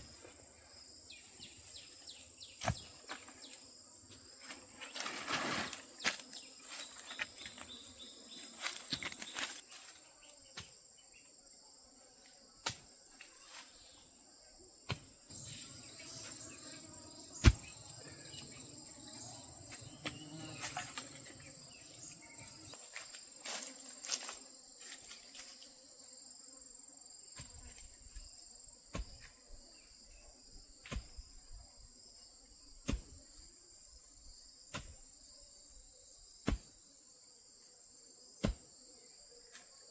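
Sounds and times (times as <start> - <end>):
insects droning: 0.0 - 39.9.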